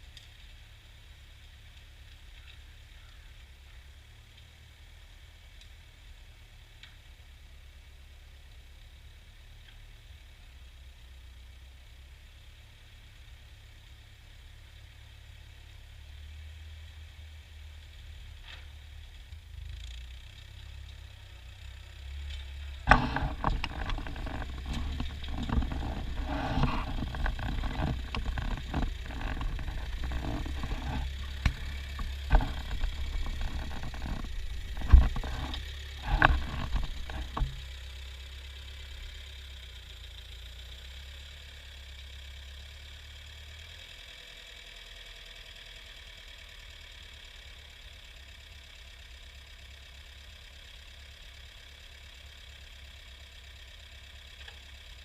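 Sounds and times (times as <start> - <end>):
tractor engine running: 17.7 - 44.0
clattering and sharp knocks: 22.9 - 37.6.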